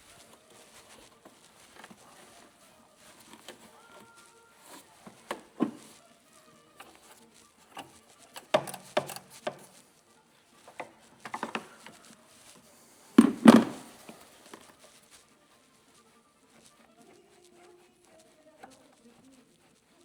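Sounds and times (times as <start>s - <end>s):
metal parts clicking and knocking: 7.7s - 9.8s.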